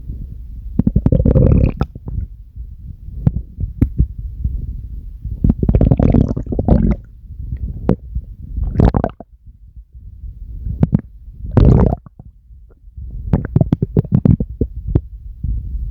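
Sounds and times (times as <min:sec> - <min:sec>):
stomach growling and gurgling: 0:00.7 - 0:02.4, 0:03.1 - 0:04.2, 0:05.4 - 0:09.4, 0:10.6 - 0:15.1.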